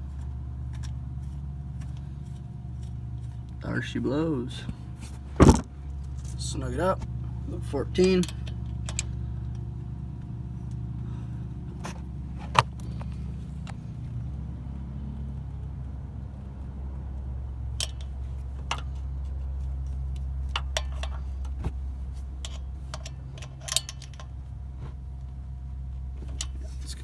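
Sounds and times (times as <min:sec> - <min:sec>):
low mechanical hum: 0:00.0 - 0:27.0.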